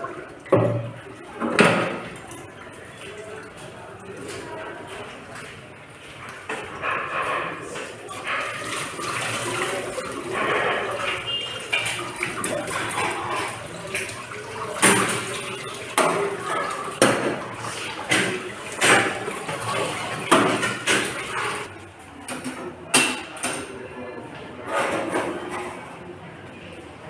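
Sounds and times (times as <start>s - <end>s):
water running: 0.0s - 5.6s, 7.6s - 21.9s
dishes clattering: 6.5s - 21.7s, 22.3s - 23.8s.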